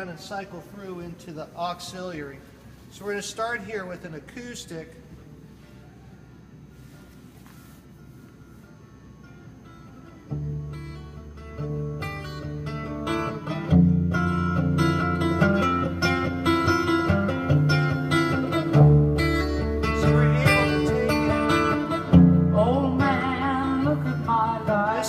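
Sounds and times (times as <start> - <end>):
acoustic guitar song over speakers: 0.0 - 25.0
person singing: 19.8 - 25.0.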